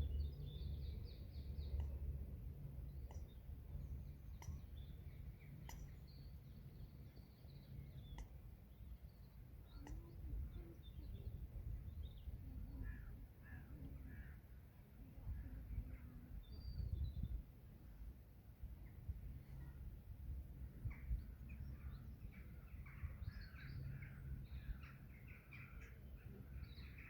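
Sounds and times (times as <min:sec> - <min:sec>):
birds calling and chirping: 0:00.0 - 0:14.4, 0:20.7 - 0:27.0
low steady rumble: 0:00.0 - 0:27.0
sharp clicks: 0:03.0 - 0:03.3, 0:05.6 - 0:06.0, 0:08.1 - 0:08.4.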